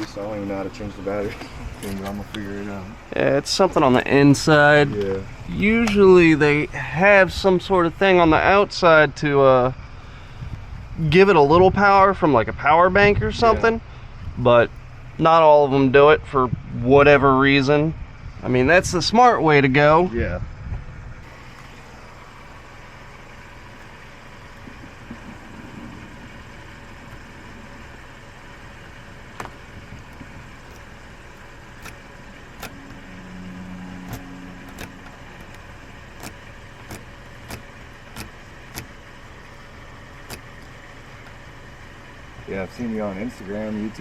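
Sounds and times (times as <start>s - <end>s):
steady low hum: 0.0s - 17.0s, 20.5s - 44.0s
sharp clicks: 28.8s - 33.1s, 34.0s - 41.4s
short low drone: 32.6s - 36.2s.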